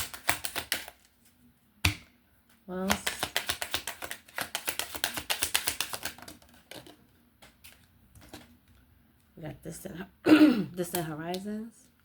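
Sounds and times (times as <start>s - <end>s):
cards being shuffled: 0.0s - 1.4s, 2.9s - 8.6s.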